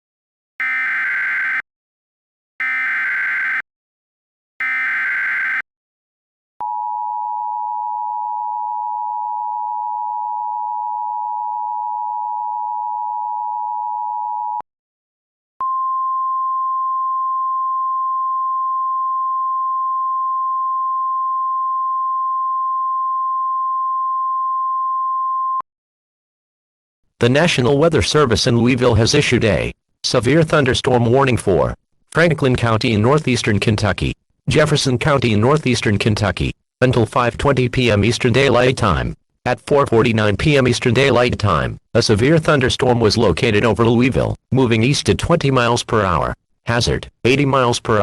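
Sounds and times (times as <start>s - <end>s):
screeching data tones: 0.6s - 1.6s, 2.6s - 3.6s, 4.6s - 5.6s
steady alert tone: 0.6s - 1.6s, 2.6s - 3.6s, 4.6s - 5.6s
two-tone attention signal: 0.6s - 1.6s, 2.6s - 3.6s, 4.6s - 5.6s.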